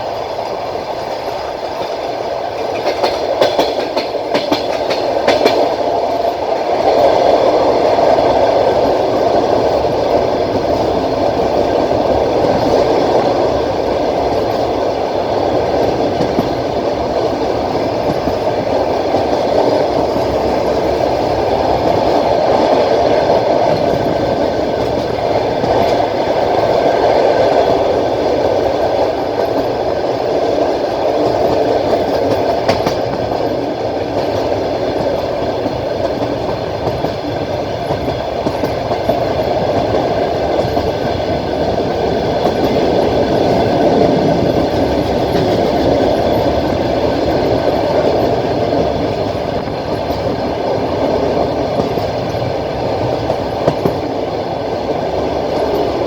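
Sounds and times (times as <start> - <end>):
train wheels rumbling on rail: 0.0 - 56.0
wheel clicks over rail joints: 1.0 - 54.2.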